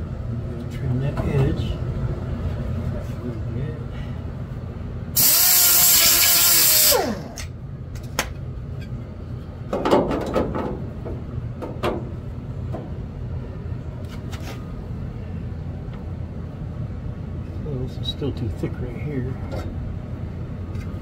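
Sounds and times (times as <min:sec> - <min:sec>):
power tool winding down: 0:05.2 - 0:07.5.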